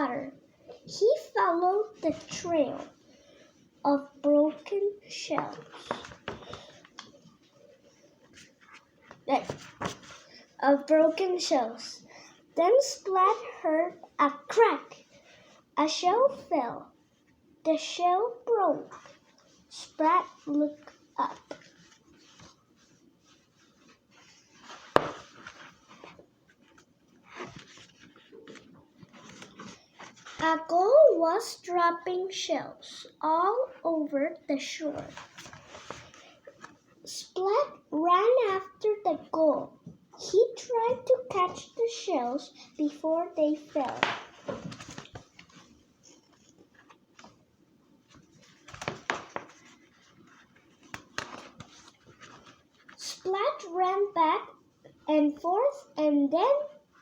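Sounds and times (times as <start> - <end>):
paper rustling: 5.3 - 10.5, 20.2 - 30.7, 34.9 - 36.9, 43.6 - 47.5, 48.1 - 53.6.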